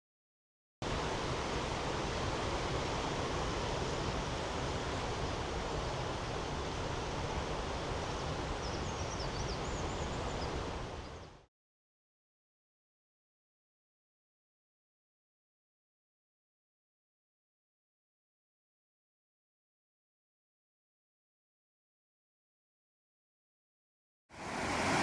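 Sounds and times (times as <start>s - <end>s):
stream rushing over rocks: 0.8s - 11.1s, 24.4s - 25.0s.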